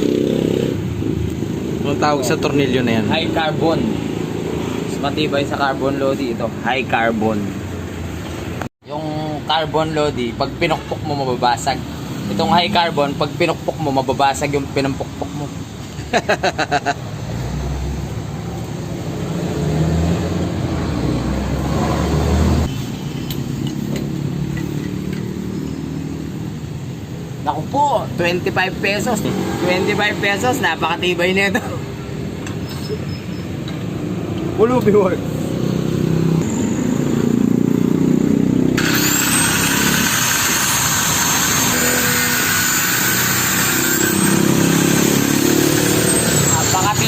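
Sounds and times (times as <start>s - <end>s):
angle grinder cutting steel: 38.8s - 47.0s.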